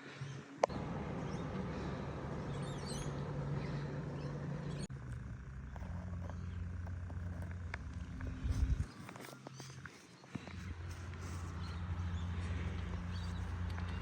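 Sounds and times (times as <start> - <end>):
steady outdoor noise: 0.0 - 14.0
faint bird chirps: 0.2 - 4.9
low hum: 0.6 - 14.0.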